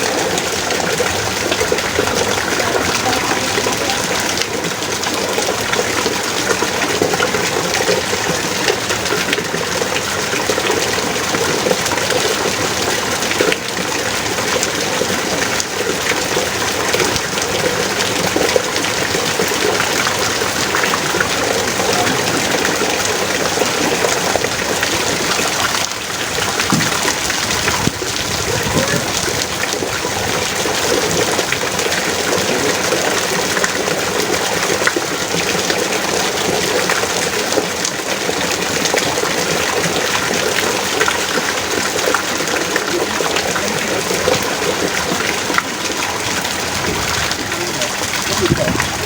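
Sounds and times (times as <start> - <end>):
heavy rain pouring: 0.0 - 49.0.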